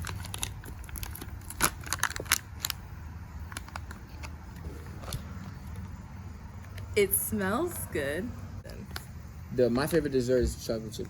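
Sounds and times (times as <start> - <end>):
plastic packaging crinkling: 0.0 - 2.8.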